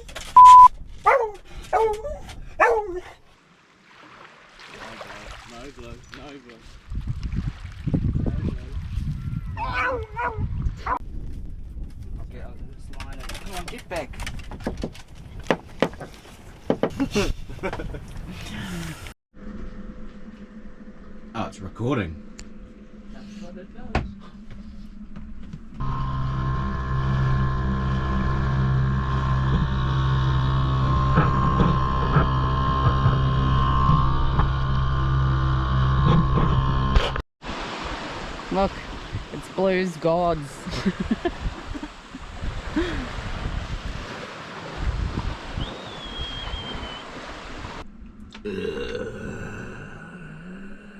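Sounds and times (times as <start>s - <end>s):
waves washing: 3.4s - 6.9s, 37.4s - 47.9s
wind buffeting microphone: 5.8s - 16.7s, 40.6s - 47.9s
boat motor running: 19.4s - 37.2s
thin whistle: 45.6s - 47.1s.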